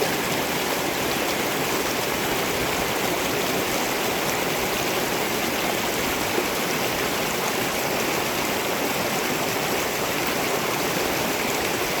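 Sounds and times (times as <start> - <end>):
rushing mountain torrent: 0.0 - 12.0.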